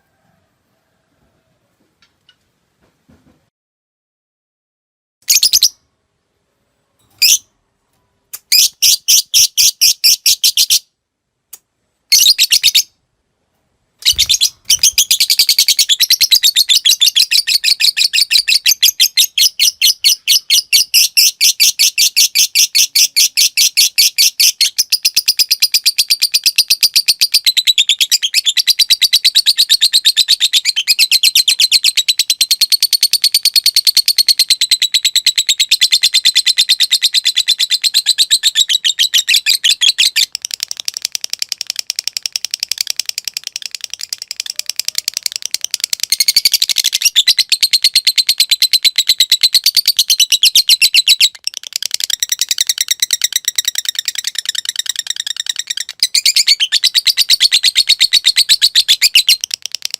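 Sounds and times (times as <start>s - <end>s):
lovebird chattering: 14.0s - 59.9s.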